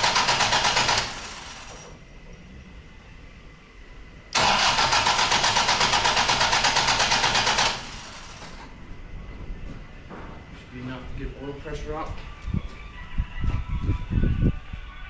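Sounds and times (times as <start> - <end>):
starter motor cranking diesel engine: 0.0 - 2.0, 4.3 - 8.7.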